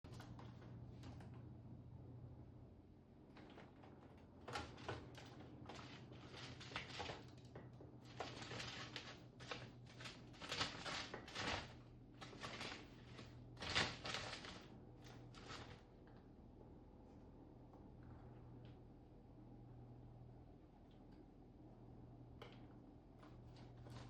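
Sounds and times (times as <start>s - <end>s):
chipmunk scratching and rustling: 4.5s - 7.4s, 8.0s - 15.8s.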